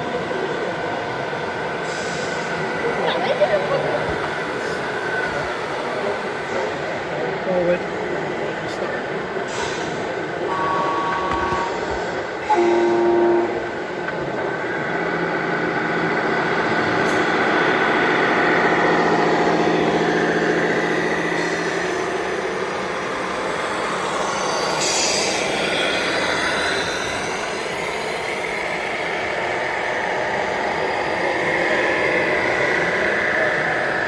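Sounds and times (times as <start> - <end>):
horn blast: 12.4 - 13.7
high squeal: 24.0 - 29.2.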